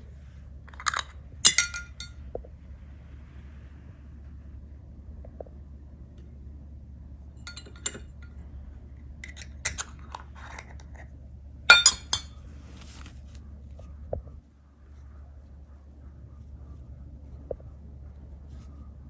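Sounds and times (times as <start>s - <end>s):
steady low hum: 0.0s - 19.0s
ceramic paint dishes clinking: 0.7s - 2.2s, 7.5s - 8.4s, 9.2s - 11.1s, 11.7s - 12.4s.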